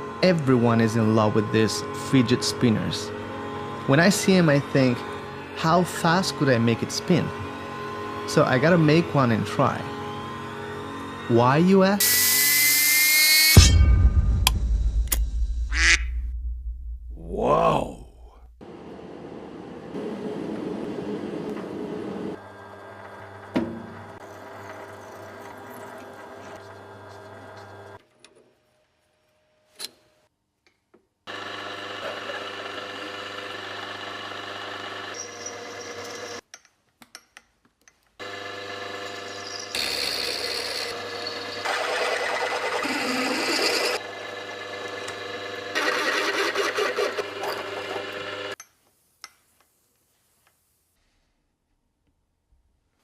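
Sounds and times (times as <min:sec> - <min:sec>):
small electric power tool running: 0:00.0 - 0:13.6, 0:31.3 - 0:36.4, 0:38.2 - 0:48.6.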